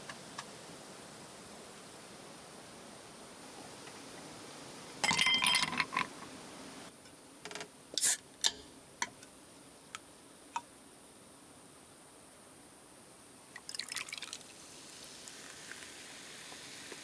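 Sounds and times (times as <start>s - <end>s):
small hard objects clinking: 5.0s - 6.1s.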